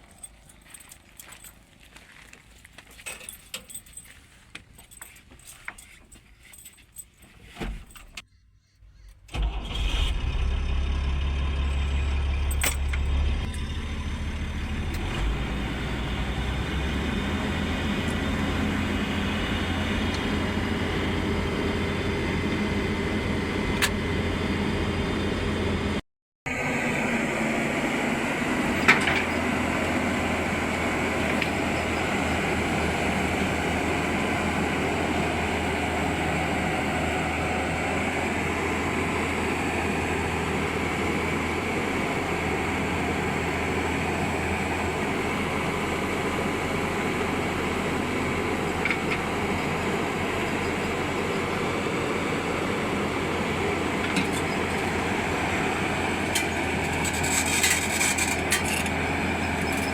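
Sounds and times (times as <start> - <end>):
diesel engine running: 8.6 - 59.9.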